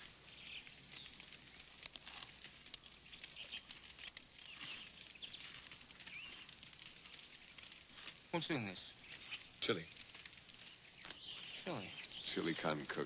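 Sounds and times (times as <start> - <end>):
faint bird chirps: 0.0 - 1.3, 2.8 - 13.0
low hiss: 0.0 - 13.0
small clicks: 1.0 - 8.2, 9.9 - 11.4.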